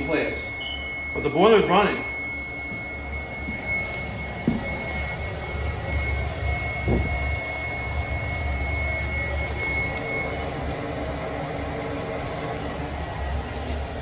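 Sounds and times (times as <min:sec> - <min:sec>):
faint high whine: 0:00.0 - 0:10.8
boiler low rumble: 0:02.1 - 0:14.0.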